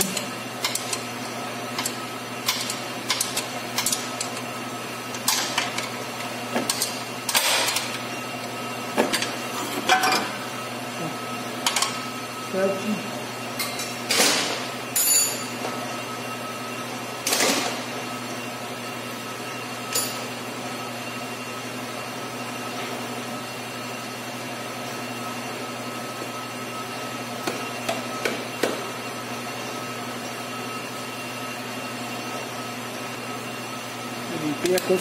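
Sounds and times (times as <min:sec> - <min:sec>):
steady background hum: 0:00.0 - 0:21.2.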